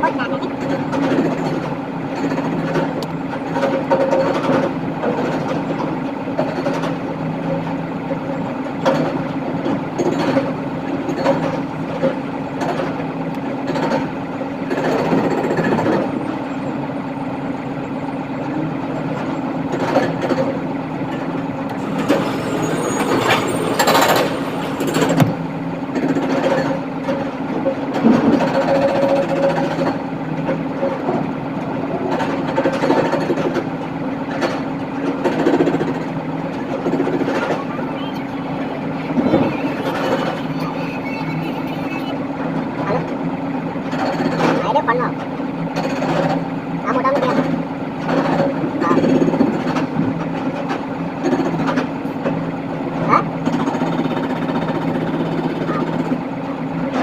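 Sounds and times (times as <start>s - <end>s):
excavator engine running: 0.0s - 57.0s.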